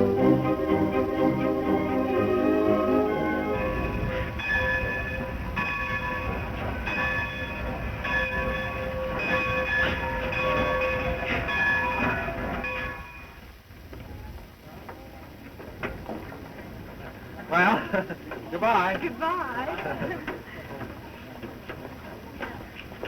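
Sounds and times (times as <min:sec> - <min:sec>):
train bell ringing: 0:00.0 - 0:13.5
train rumbling: 0:00.0 - 0:23.0.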